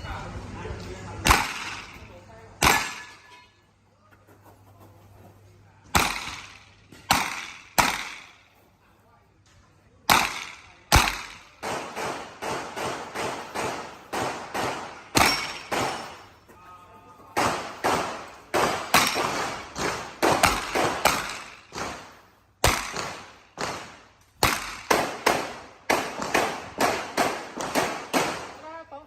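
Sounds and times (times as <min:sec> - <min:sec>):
handgun shots with ringing tail: 0:10.1 - 0:16.2.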